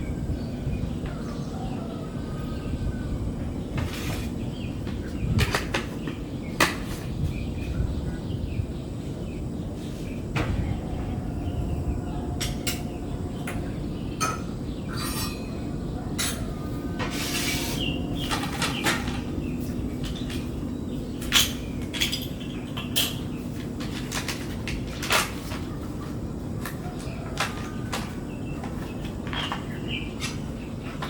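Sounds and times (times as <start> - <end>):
dishes and cutlery clinking: 14.2 - 19.3.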